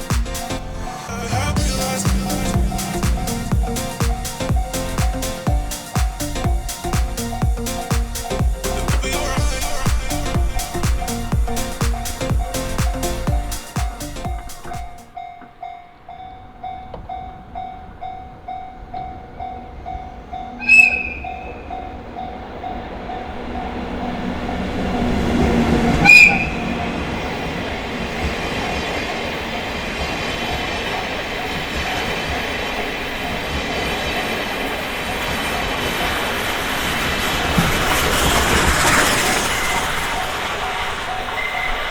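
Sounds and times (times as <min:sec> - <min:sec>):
train rolling past: 0:00.0 - 0:41.9
level crossing bell ringing: 0:01.1 - 0:06.6
train horn: 0:20.6 - 0:21.7, 0:24.2 - 0:27.4.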